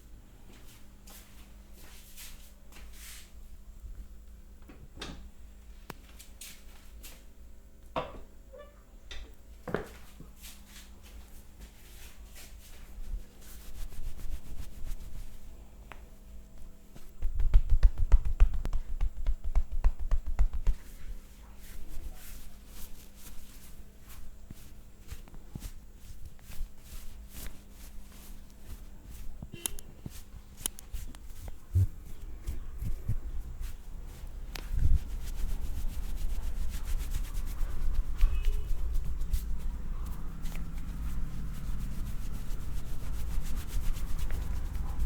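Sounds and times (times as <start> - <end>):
hands rubbing skin and hair: 10.4 - 45.0.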